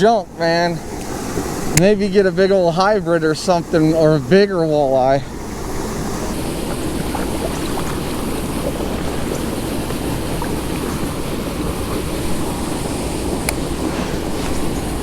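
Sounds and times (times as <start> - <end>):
water rushing from pipe: 0.0 - 15.0
wind noise on microphone: 5.3 - 15.0.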